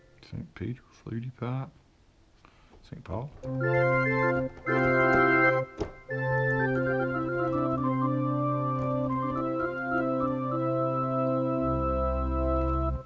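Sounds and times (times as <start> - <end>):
pipe organ chords: 3.4 - 13.0.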